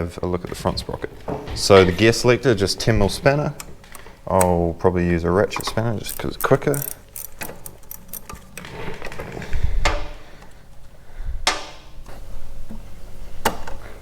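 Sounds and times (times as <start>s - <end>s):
ratchet spanner clicks: 5.5s - 8.6s.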